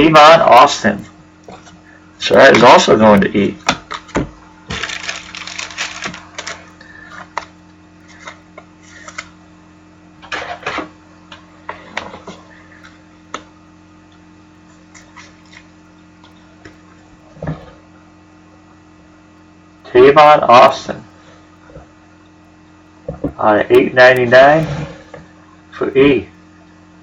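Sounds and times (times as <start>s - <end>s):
steady electrical hum: 0.0s - 27.0s
trading cards rustling and clicking: 3.9s - 9.3s.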